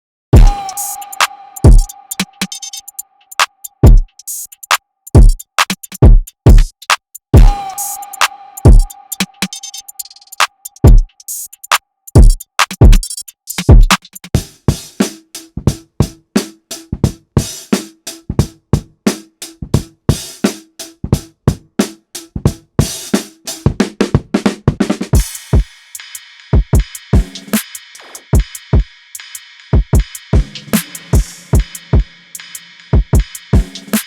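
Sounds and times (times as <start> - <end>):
kick drums with falling pitch: 0.4 - 0.6, 1.6 - 1.9, 7.4 - 7.6, 8.7 - 8.9, 10.8 - 11.1
cymbal wash: 0.4 - 3.7, 7.4 - 10.9, 25.2 - 34.0
fast drum machine hits: 0.4 - 25.8, 26.5 - 29.0, 29.7 - 34.0.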